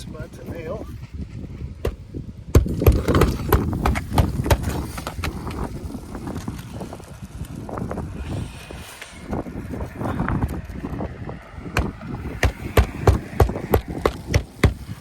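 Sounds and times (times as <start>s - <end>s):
hammer striking roofing nails: 1.8s - 5.4s, 11.7s - 15.0s.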